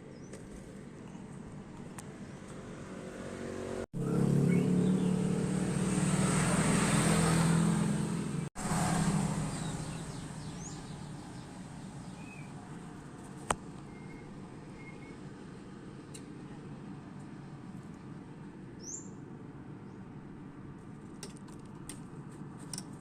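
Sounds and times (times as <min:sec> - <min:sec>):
vehicle engine passing by: 0:02.6 - 0:13.1.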